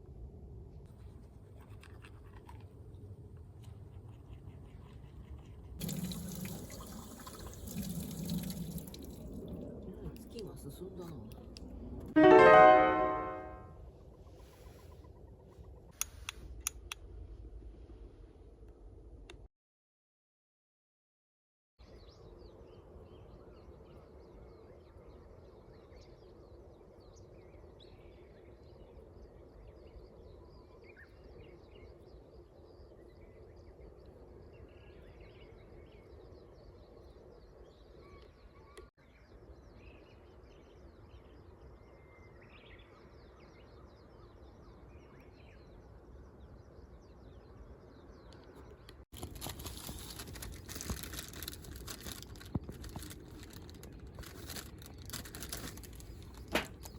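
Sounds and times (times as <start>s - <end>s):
rustling and crinkling: 0.9s - 6.5s, 49.1s - 56.9s.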